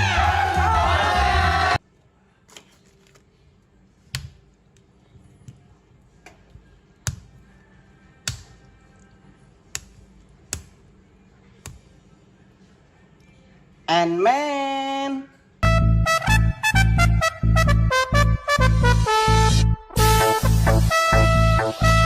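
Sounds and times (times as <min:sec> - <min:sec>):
background music: 0:00.0 - 0:01.8, 0:13.8 - 0:22.0.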